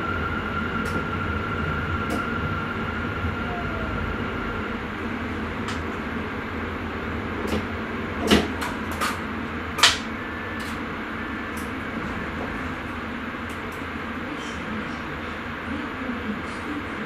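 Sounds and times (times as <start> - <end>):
electric train running rumble: 0.0 - 17.0.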